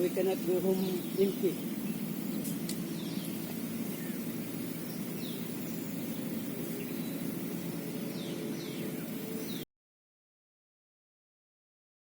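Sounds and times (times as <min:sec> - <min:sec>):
low outdoor rumble: 0:00.0 - 0:09.6
faint bird chirps: 0:00.0 - 0:09.7.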